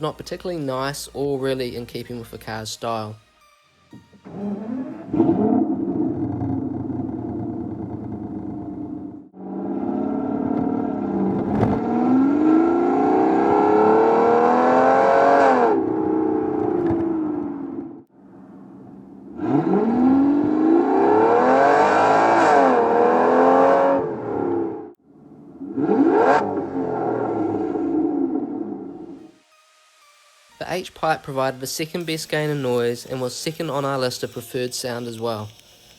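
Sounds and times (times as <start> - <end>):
car engine accelerating: 4.2 - 29.3
engine free rev: 4.2 - 29.3.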